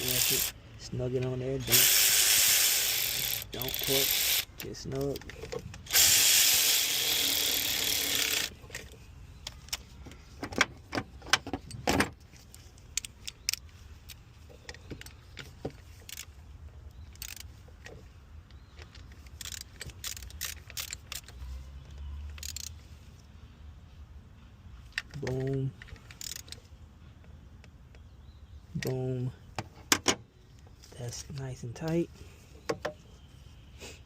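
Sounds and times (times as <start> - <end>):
cordless electric ratchet running: 0.0 - 0.6, 1.6 - 4.6, 5.9 - 8.5, 17.2 - 17.5.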